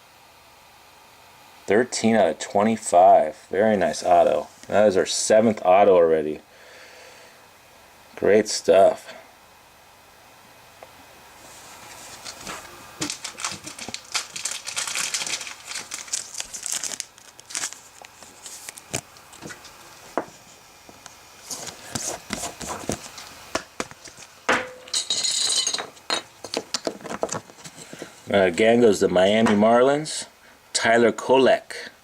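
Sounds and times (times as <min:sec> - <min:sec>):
trading cards rustling: 0:11.9 - 0:20.1, 0:21.4 - 0:24.4.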